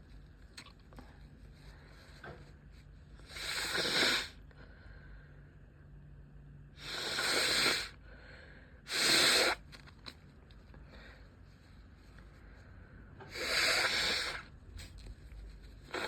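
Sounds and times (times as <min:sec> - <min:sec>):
hissing breaths through nose: 0:03.2 - 0:04.4, 0:06.8 - 0:08.0, 0:08.9 - 0:09.6, 0:13.2 - 0:14.5.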